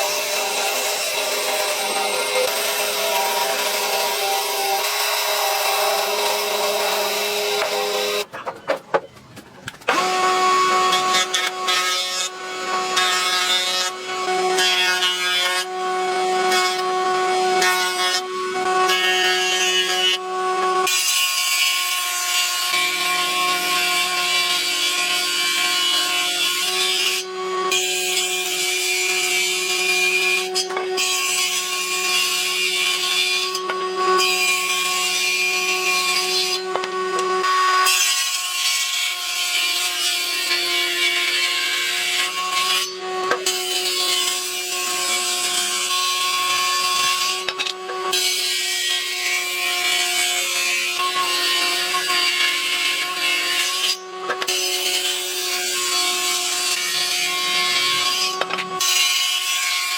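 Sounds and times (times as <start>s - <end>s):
power tool on wood: 0.0s - 59.9s.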